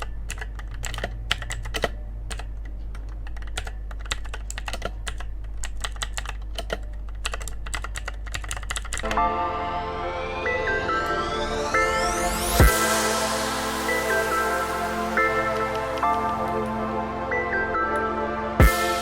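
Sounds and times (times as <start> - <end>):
mechanical keyboard key clicks: 0.0 - 9.2.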